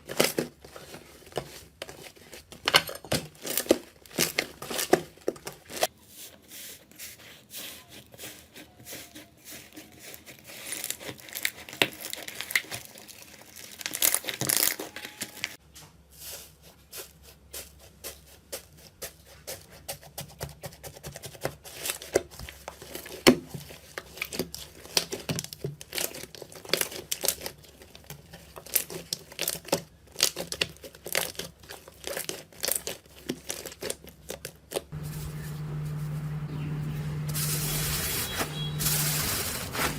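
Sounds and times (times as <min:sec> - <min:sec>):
slime crackling and popping: 0:11.2 - 0:15.3.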